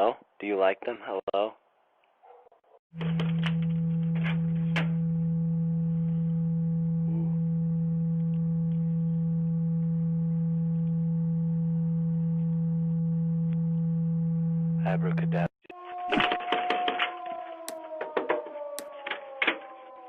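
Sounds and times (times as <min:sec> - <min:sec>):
steady low tone: 0:03.0 - 0:15.5
sharp clicks: 0:18.8 - 0:19.0.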